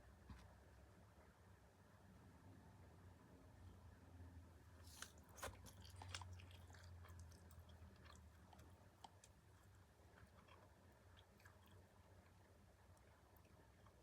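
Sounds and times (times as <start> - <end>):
person chewing crunchy food: 4.8 - 12.4.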